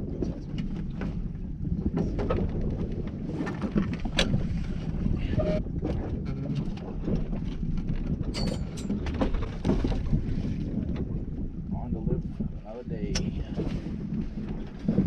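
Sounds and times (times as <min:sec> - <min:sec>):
low rumble: 0:00.0 - 0:15.0
wind buffeting microphone: 0:00.0 - 0:15.0
sharp knocks and clicks: 0:13.0 - 0:13.5.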